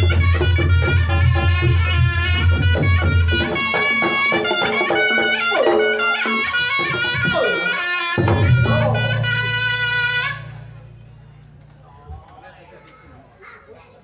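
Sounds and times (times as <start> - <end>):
hand drum playing: 0.0 - 11.1
reedy wind instrument melody: 0.0 - 11.6
gamelan percussion: 0.0 - 11.7
deep low tone: 8.2 - 12.1.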